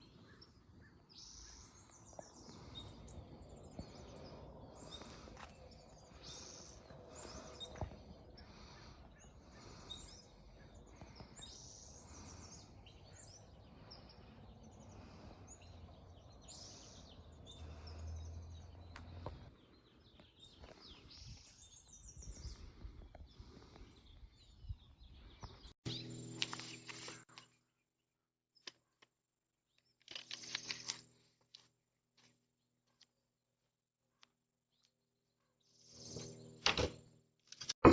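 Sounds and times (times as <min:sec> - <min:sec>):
birds chirping and trilling: 0:00.0 - 0:27.9, 0:34.7 - 0:37.1.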